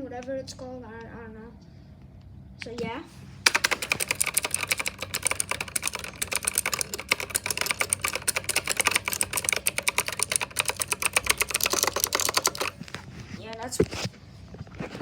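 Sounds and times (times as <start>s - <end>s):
mechanical keyboard typing: 3.4s - 13.0s.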